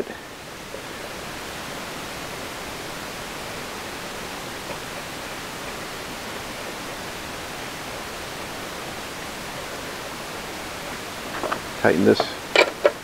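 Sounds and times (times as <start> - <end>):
steady background hiss: 0.0 - 13.0.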